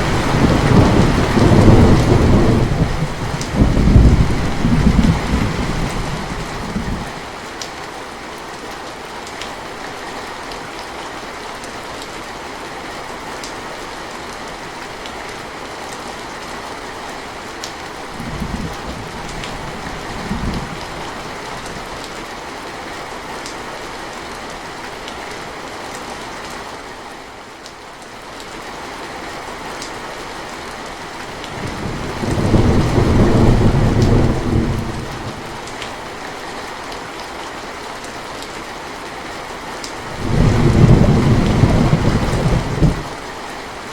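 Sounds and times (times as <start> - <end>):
thunder rumbling: 0.0 - 7.2, 18.1 - 21.9, 31.5 - 35.9, 40.1 - 43.2
steady rainfall: 0.0 - 43.9.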